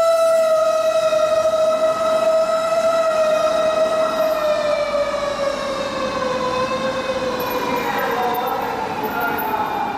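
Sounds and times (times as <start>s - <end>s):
fire engine siren wailing: 0.0s - 9.9s.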